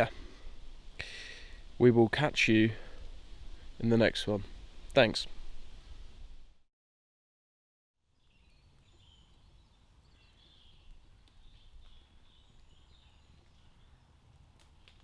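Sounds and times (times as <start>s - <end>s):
faint birdsong chirping: 8.0s - 15.0s.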